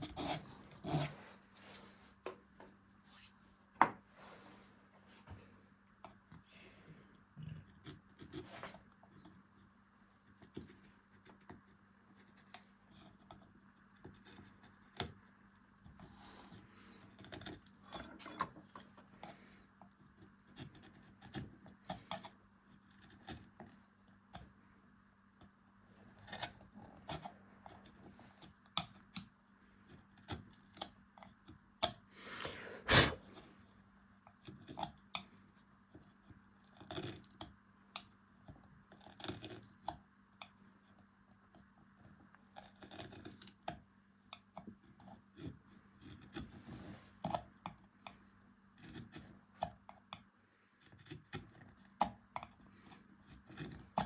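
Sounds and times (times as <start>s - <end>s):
carving tools scraping wood: 0.0s - 1.4s, 7.7s - 15.2s, 15.8s - 23.8s, 26.1s - 29.2s, 34.3s - 37.6s, 38.9s - 39.9s, 41.6s - 43.8s, 44.6s - 47.5s, 48.7s - 49.9s, 50.8s - 54.0s.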